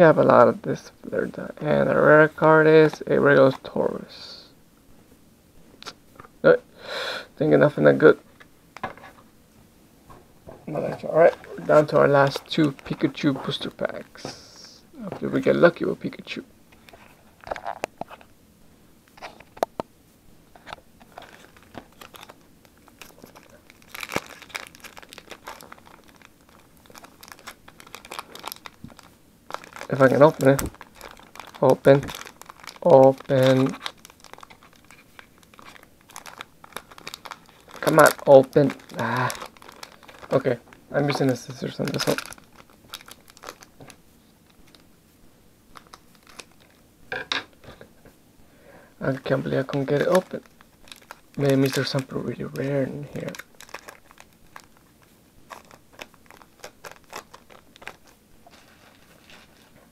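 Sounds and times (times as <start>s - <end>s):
foil wrapper crinkling: 10.7s - 15.9s, 20.6s - 44.9s, 45.7s - 46.8s, 49.0s - 59.9s.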